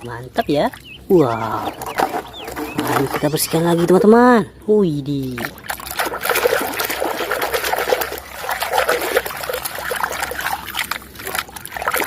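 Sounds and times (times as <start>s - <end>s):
water trickling and splashing: 0.0s - 4.2s, 5.1s - 12.0s.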